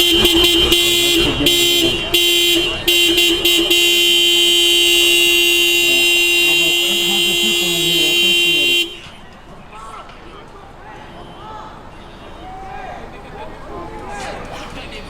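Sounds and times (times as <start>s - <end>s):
car horn honking: 0.0s - 9.4s.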